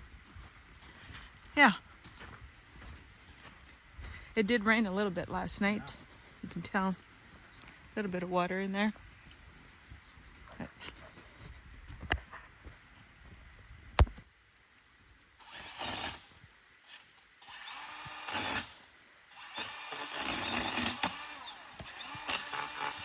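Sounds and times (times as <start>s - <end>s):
pole saw motor whirring: 16.9s - 23.0s.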